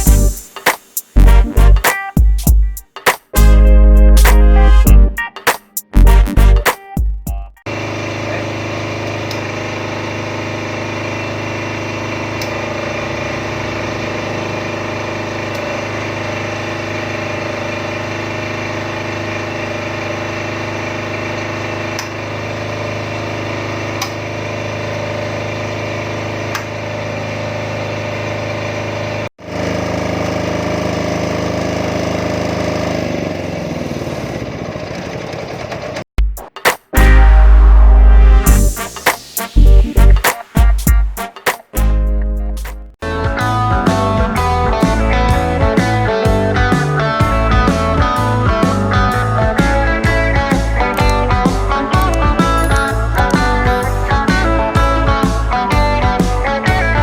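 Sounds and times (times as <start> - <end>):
diesel generator running: 7.7 - 36.0, 43.0 - 57.0.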